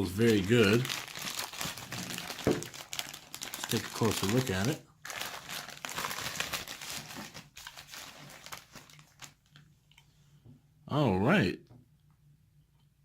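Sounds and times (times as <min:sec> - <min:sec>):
packaging crinkling and rustling: 0:00.0 - 0:09.7.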